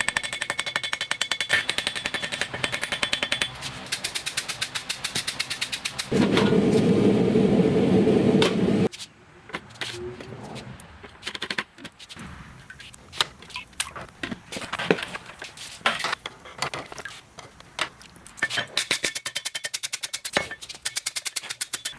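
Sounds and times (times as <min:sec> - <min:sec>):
loud rushing noise: 0:06.1 - 0:08.9
light knocks and metal clinks: 0:12.2 - 0:21.1.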